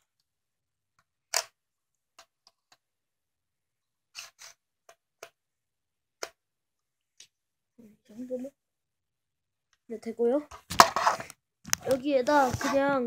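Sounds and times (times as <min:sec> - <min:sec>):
short plastic scrapes: 0:10.7 - 0:13.0.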